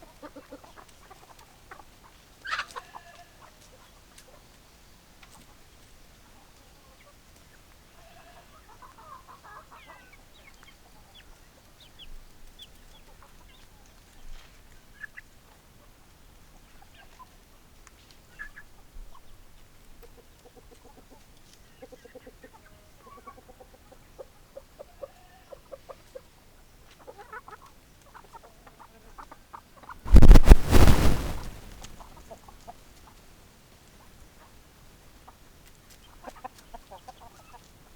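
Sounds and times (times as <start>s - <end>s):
chickens clucking: 0.1s - 2.9s
loud noisy burst: 30.1s - 31.9s.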